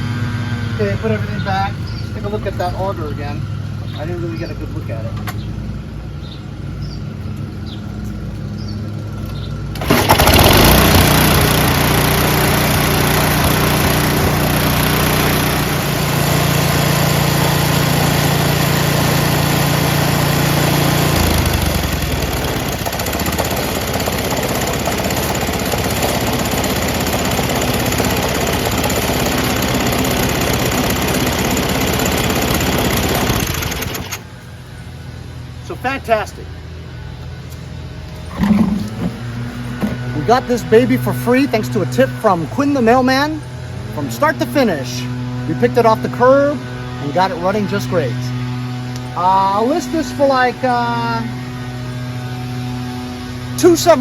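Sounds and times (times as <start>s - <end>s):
snowblower engine running: 0.0s - 54.0s
auger and impeller spinning: 9.7s - 34.4s, 38.1s - 42.3s.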